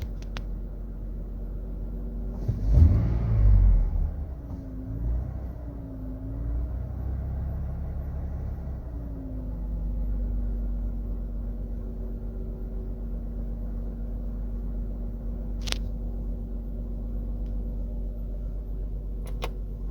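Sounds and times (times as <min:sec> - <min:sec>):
car engine whining: 0:00.0 - 0:19.9
sharp click: 0:19.2 - 0:19.6.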